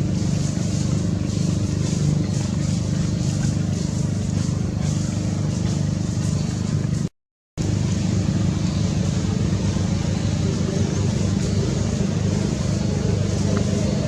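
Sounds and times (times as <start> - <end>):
hiss: 0.0 - 6.7
low mechanical drone: 0.0 - 14.0.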